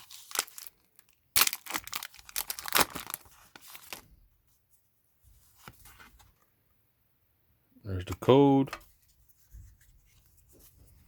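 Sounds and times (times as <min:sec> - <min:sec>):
cards rustling: 0:00.0 - 0:04.1
foil pack crinkling and tearing: 0:00.0 - 0:04.1.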